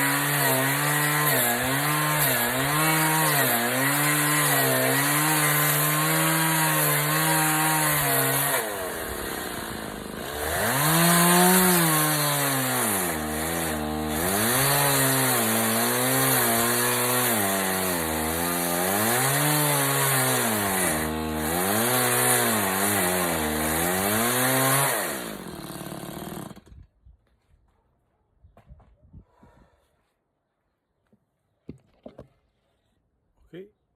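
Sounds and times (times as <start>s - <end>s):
chainsaw cutting wood: 0.0s - 26.8s.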